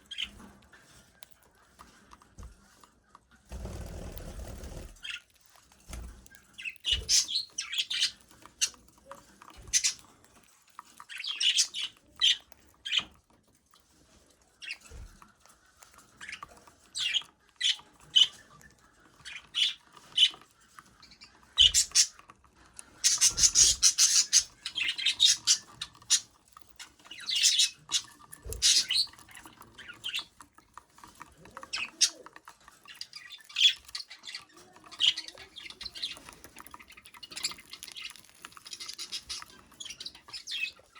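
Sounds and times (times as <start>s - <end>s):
budgerigar chirping: 23.0s - 26.3s, 27.2s - 29.2s.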